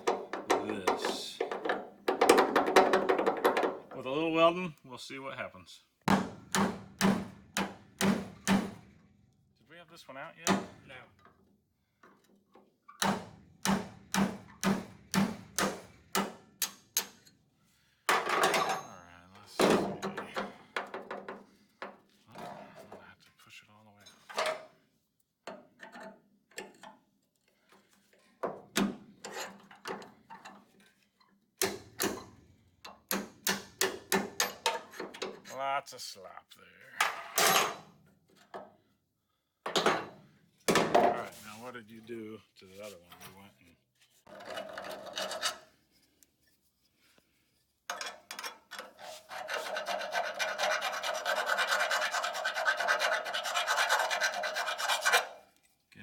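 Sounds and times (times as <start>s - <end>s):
rasping on steel: 48.1s - 55.6s.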